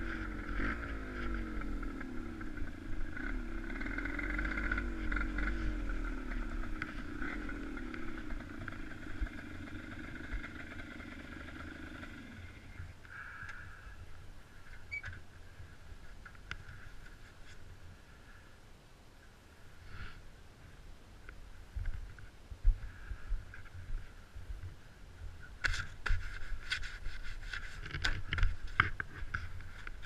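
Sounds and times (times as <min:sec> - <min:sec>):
vehicle engine revving: 0:00.0 - 0:12.7.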